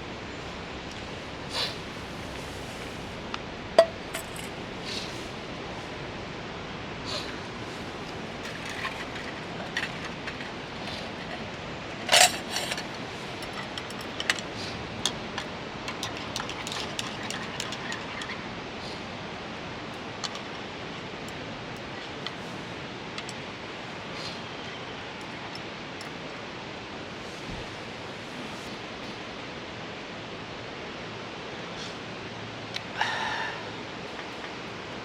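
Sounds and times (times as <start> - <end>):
steady hiss: 0.0 - 35.0
clicks and clinks of items handled: 3.8 - 4.6, 8.1 - 18.4, 20.0 - 23.4.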